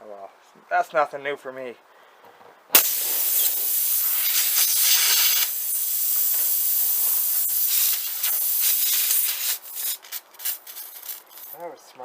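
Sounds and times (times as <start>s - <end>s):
air hissing from tire: 2.8s - 11.1s.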